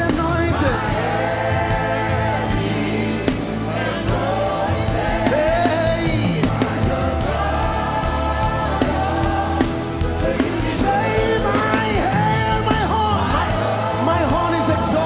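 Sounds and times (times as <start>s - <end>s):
band with bass and drums: 0.0s - 15.0s
voices singing: 0.0s - 15.0s.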